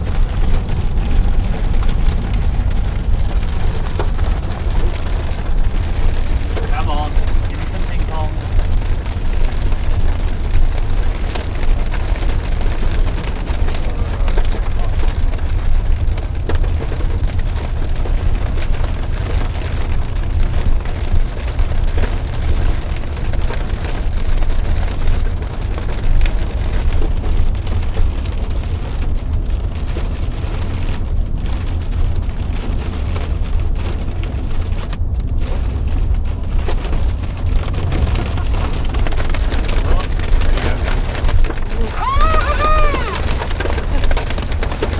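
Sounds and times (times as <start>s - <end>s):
deep rumble: 0.0s - 44.9s
heavy rain on a vehicle: 0.0s - 44.9s.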